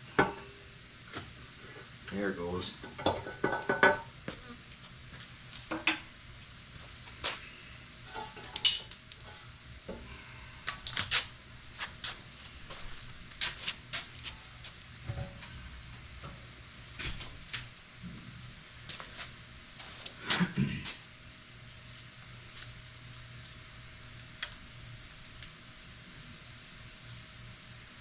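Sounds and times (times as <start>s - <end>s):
metallic clinks of tools: 8.6s - 9.0s.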